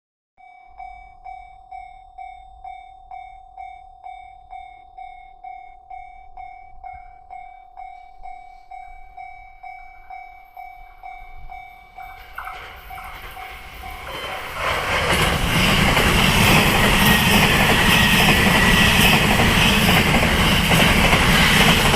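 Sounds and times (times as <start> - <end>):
level crossing bell ringing: 0.4 - 14.4
approaching train: 0.7 - 21.9.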